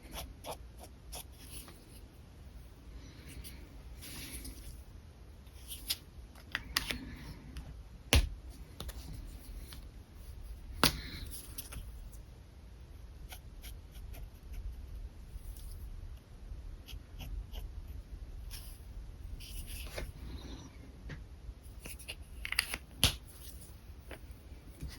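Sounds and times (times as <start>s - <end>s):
pen scratching on paper: 0.1s - 1.7s, 13.2s - 14.7s, 16.8s - 18.7s.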